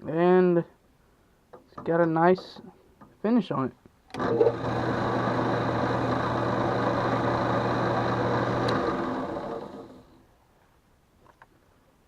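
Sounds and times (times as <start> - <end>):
drill press motor humming: 4.1 - 10.2.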